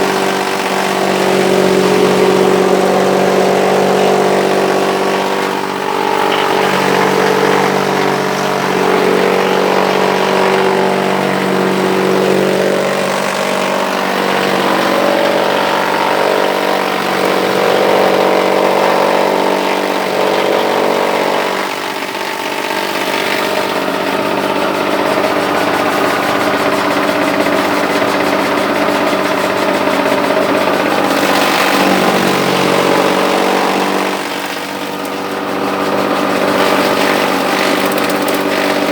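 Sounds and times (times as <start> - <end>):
chaff cutter mechanical drone: 0.0 - 38.9.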